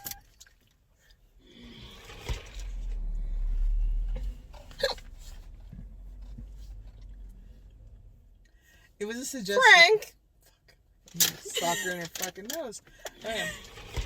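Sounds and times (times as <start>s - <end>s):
low rumble: 1.4s - 8.9s.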